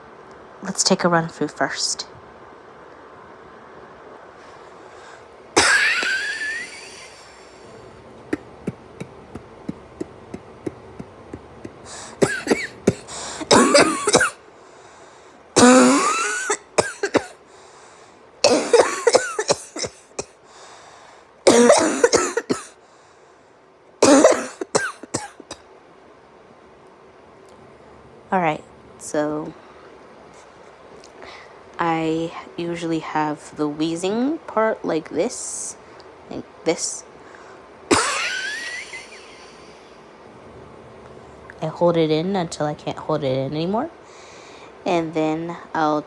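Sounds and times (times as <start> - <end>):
person coughing: 5.6 - 7.6, 8.3 - 14.4, 15.6 - 17.4, 18.4 - 20.3, 21.5 - 22.7, 24.0 - 25.5, 37.9 - 39.7
wheezing cough: 5.6 - 7.7, 8.3 - 14.4, 15.6 - 17.4, 18.4 - 20.3, 21.5 - 22.8, 24.0 - 25.6, 37.9 - 39.8.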